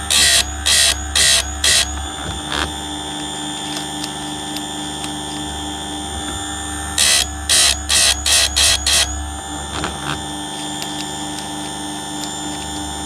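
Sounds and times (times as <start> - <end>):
click: 3.7 - 5.5, 10.6 - 12.9.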